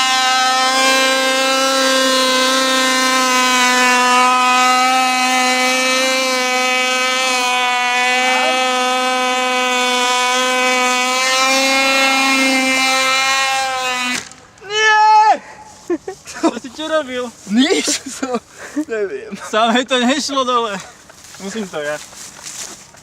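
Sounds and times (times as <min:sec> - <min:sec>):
model airplane engine buzzing: 0:00.0 - 0:14.4.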